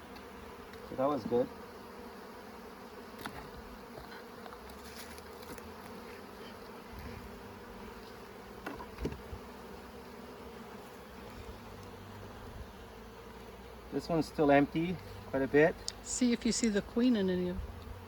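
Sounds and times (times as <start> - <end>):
honeybees buzzing: 0.0 - 18.0.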